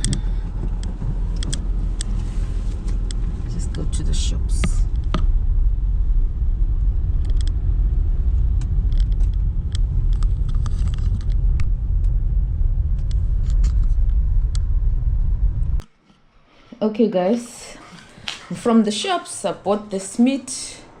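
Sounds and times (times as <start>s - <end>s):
car engine and road noise: 0.0s - 15.9s.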